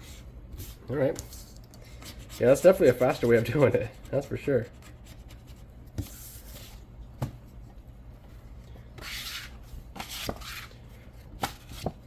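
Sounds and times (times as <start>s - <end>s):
paper rustling and scraping: 9.0s - 10.8s, 11.4s - 12.0s.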